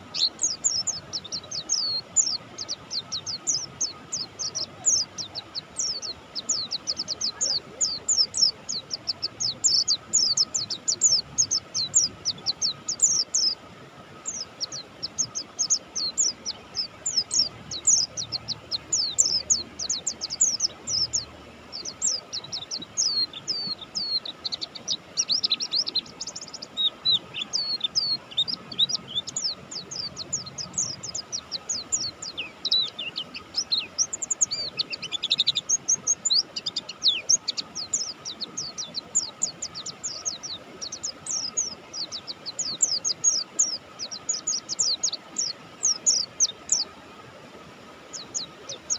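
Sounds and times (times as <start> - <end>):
bird chirping rapidly: 14.2 - 46.8.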